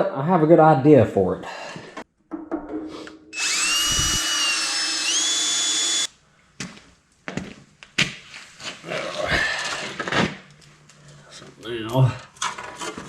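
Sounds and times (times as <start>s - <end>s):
power drill motor whine: 3.4s - 6.1s.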